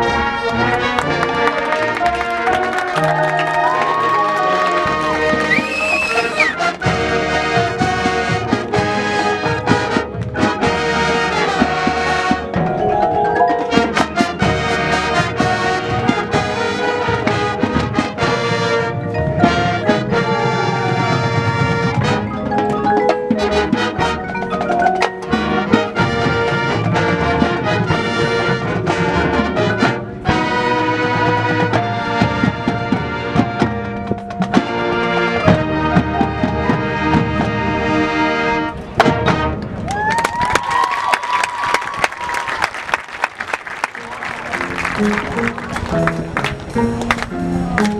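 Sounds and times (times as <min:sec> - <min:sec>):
drum percussion: 0:00.0 - 0:37.6, 0:39.0 - 0:47.9
trumpets and trombones: 0:00.0 - 0:39.9, 0:41.8 - 0:47.9
marimba and xylophone: 0:02.4 - 0:16.5, 0:17.2 - 0:30.3.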